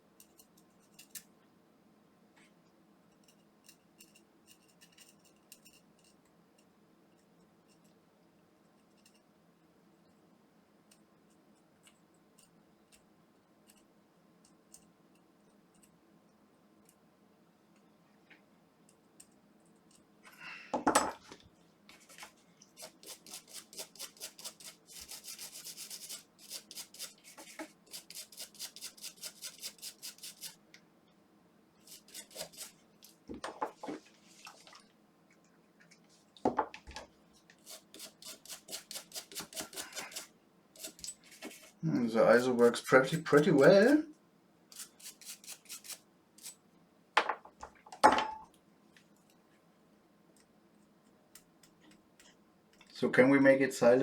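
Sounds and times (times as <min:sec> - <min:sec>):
scrubbing strokes on plastic: 0:21.9 - 0:30.6, 0:31.8 - 0:34.9, 0:37.4 - 0:42.8.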